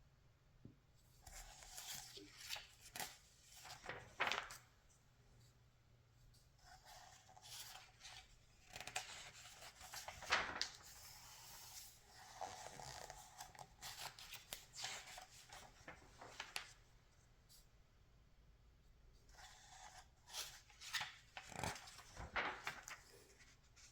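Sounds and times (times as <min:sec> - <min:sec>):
magazine pages turning: 0:01.3 - 0:04.7, 0:07.0 - 0:16.8, 0:19.4 - 0:23.9.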